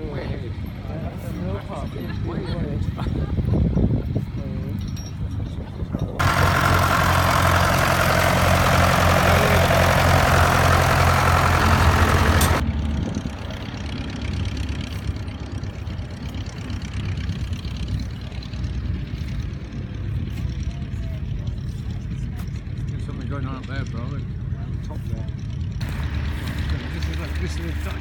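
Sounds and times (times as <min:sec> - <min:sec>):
tractor engine running: 0:06.2 - 0:22.9, 0:25.6 - 0:28.0.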